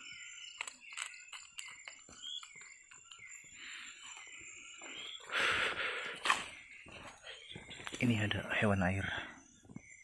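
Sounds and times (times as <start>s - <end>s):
insects calling: 0.0s - 10.0s
footsteps on wet forest floor: 1.7s - 9.0s.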